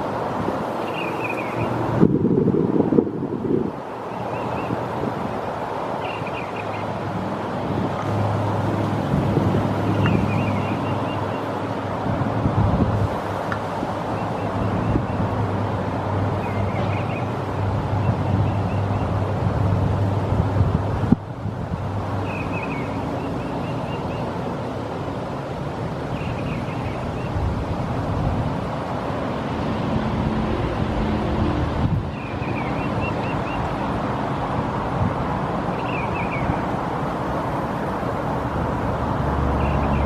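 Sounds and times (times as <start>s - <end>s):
steady outdoor rushing noise: 0.0s - 40.0s
high chirping: 0.8s - 1.8s.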